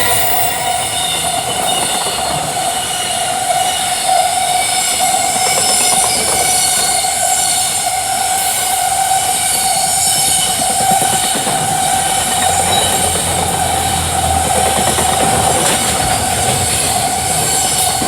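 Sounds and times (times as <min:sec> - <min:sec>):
high ringing tone: 0:00.0 - 0:01.8
freight train rushing past: 0:00.0 - 0:18.0.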